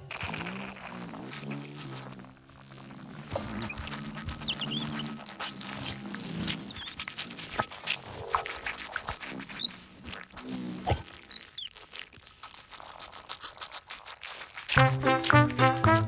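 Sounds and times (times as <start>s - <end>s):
low held music notes: 14.8s - 16.0s.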